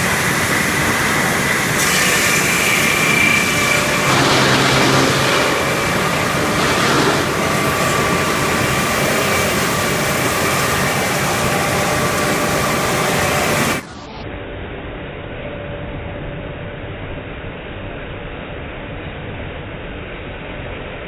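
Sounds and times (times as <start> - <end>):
sawmill machine noise: 0.0 - 14.1
saw whine: 0.0 - 14.2.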